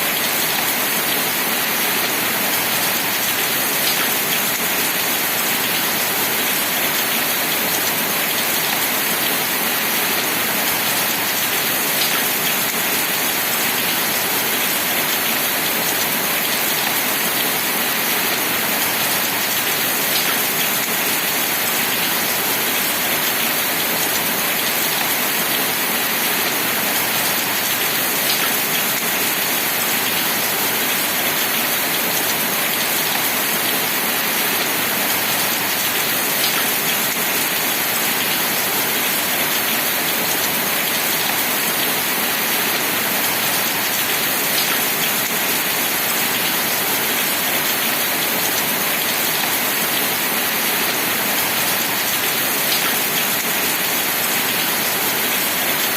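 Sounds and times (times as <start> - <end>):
steady rain falling: 0.1 - 55.9.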